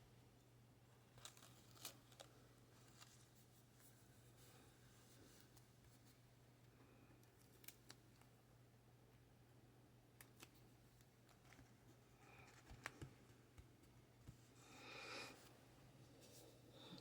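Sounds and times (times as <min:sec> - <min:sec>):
faint low hum: 0:00.0 - 0:17.0
soft paper rustle: 0:01.0 - 0:06.3, 0:10.3 - 0:14.6.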